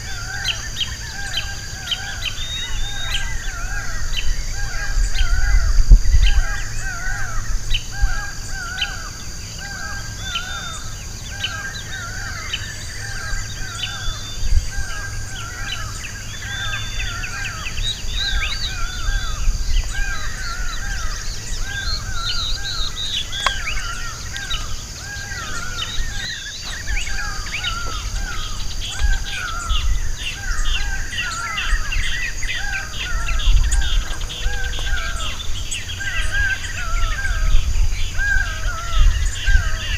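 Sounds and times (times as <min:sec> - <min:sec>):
birds chirping: 0:00.0 - 0:39.9
bird repeating harsh call: 0:08.0 - 0:37.5.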